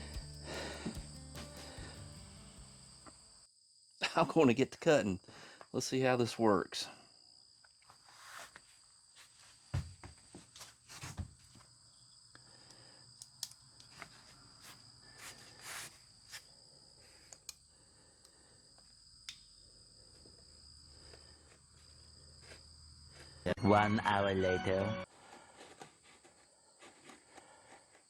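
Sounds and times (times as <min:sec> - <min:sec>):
insect chirring: 0:00.0 - 0:04.0, 0:11.6 - 0:23.5.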